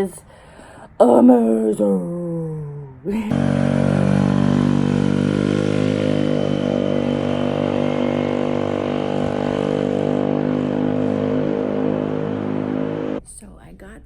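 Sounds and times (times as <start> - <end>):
motorcycle engine running: 3.3 - 13.2.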